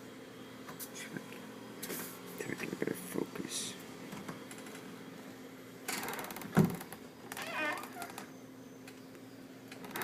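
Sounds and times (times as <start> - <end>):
wavering door squeak: 5.9 - 8.8, 9.7 - 10.0
door thumping shut: 6.4 - 6.9.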